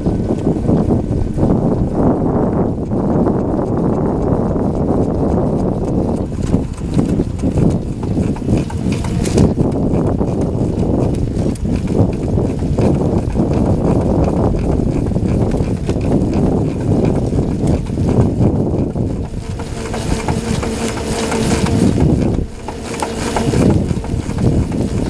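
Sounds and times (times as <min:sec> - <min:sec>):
wind noise on microphone: 0:00.0 - 0:25.0
scooter drive banging tick: 0:02.8 - 0:25.0.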